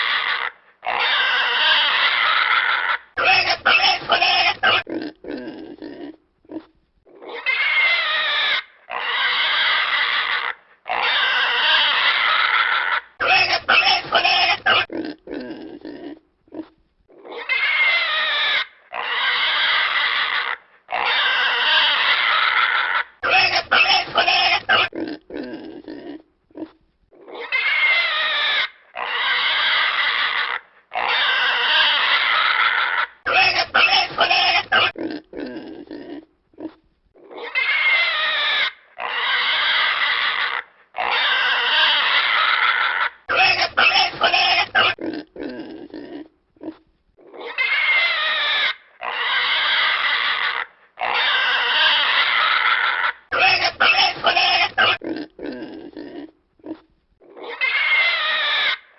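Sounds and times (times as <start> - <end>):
pigs squealing: 0.0 - 58.9.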